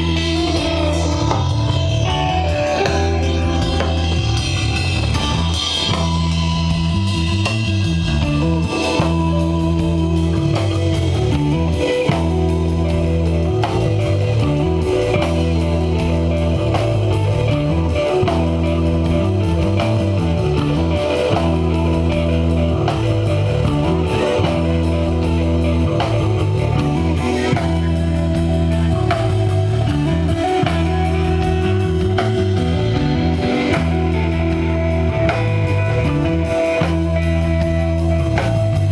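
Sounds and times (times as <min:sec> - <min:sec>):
electric guitar: 0:00.0 - 0:38.9
repeating bass line: 0:00.0 - 0:38.9
steady drum kit: 0:00.0 - 0:38.9.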